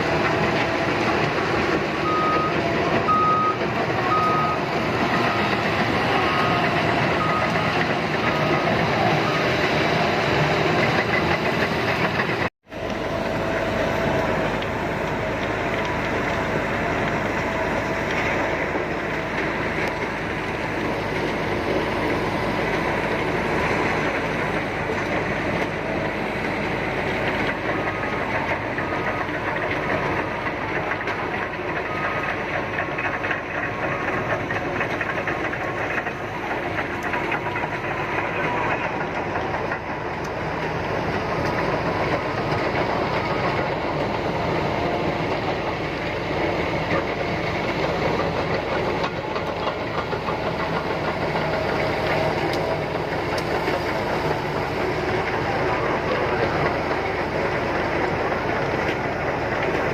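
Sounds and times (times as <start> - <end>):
diesel engine running: 0.0 - 59.9
steel tracks clattering: 0.0 - 59.9.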